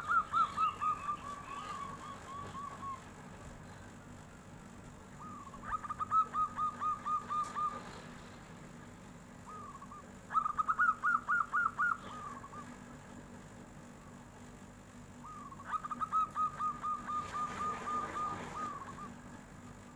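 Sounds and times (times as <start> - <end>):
dove cooing: 0.0 - 4.0, 5.1 - 8.4, 9.4 - 12.9, 15.2 - 19.9.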